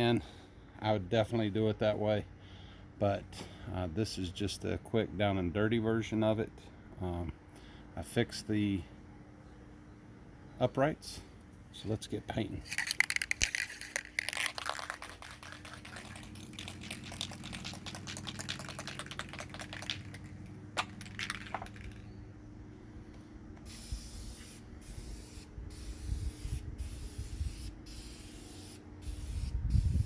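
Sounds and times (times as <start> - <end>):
spray can rattling: 12.6 - 22.0
spray paint hissing: 12.7 - 20.3, 23.6 - 30.0.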